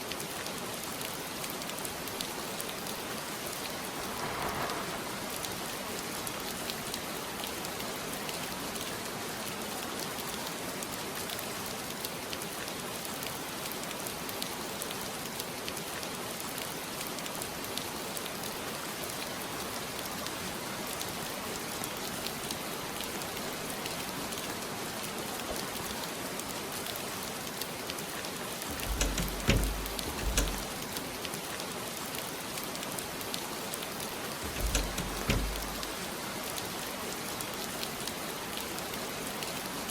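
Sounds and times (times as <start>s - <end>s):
steady rain hiss: 0.0s - 39.9s
deep low thumps: 28.7s - 30.8s.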